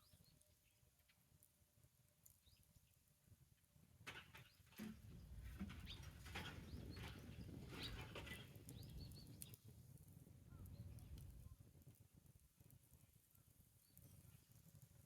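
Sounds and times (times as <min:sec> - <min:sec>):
small birds chirping: 0:05.8 - 0:09.6.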